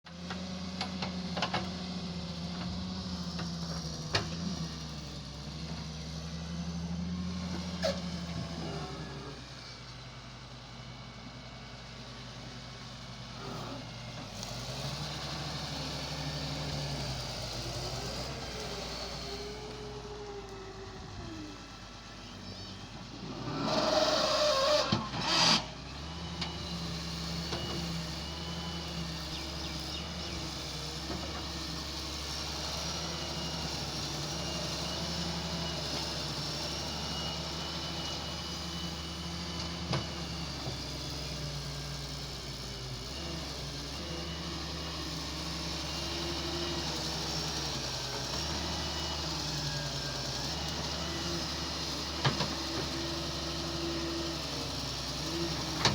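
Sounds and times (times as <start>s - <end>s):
diesel machinery engine running: 0.0s - 55.9s.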